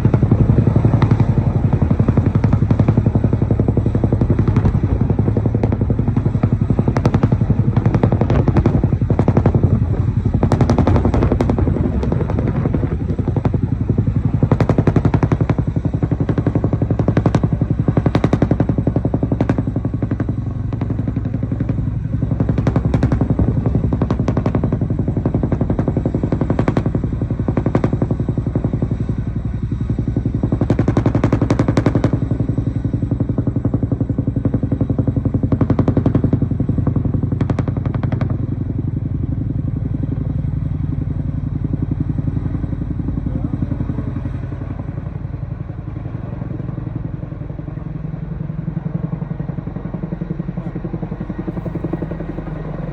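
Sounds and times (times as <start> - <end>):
rushing gusts: 0.0 - 33.2
helicopter rotor blades beating: 0.0 - 52.9.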